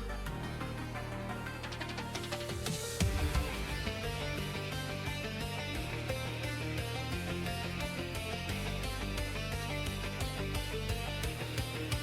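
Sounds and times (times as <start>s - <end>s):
guitar rock music: 0.0s - 12.0s
steady drum beat: 2.7s - 5.2s.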